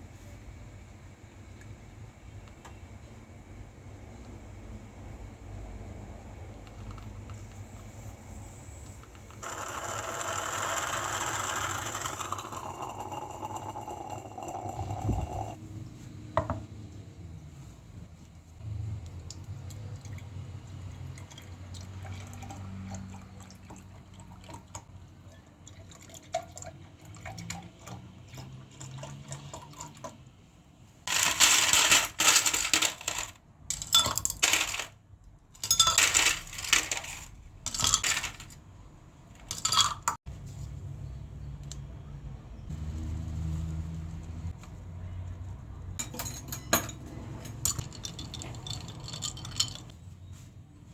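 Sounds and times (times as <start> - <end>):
ice and glassware clinking: 12.3 - 15.6, 31.1 - 34.9, 35.6 - 38.6, 39.5 - 40.2, 46.0 - 49.9.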